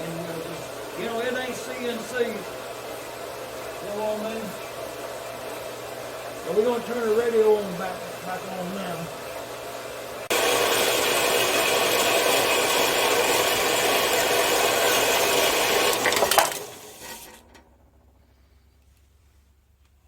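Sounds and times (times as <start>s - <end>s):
bandsaw cutting metal: 10.3s - 17.6s.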